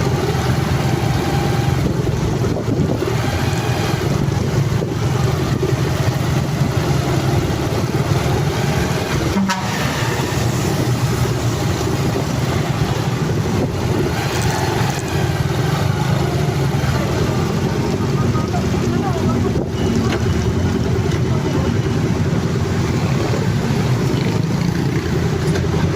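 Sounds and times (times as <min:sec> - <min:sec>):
vehicle engine running: 0:00.0 - 0:25.9
wind noise on microphone: 0:01.2 - 0:16.0.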